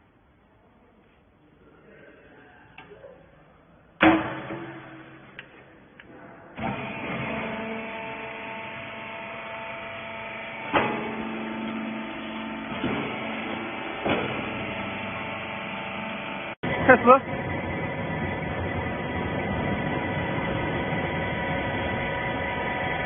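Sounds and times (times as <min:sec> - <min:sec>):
loud metal clang: 0:04.0 - 0:05.4
sharp knocks and clanks: 0:04.0 - 0:05.7, 0:10.7 - 0:15.0
baling machine humming: 0:06.6 - 0:23.0.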